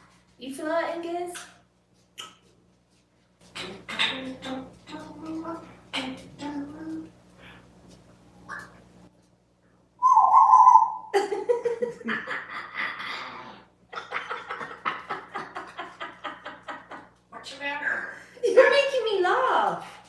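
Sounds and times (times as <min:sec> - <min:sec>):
parrot hooting: 0:10.0 - 0:11.2
parrot laughing: 0:10.2 - 0:17.2.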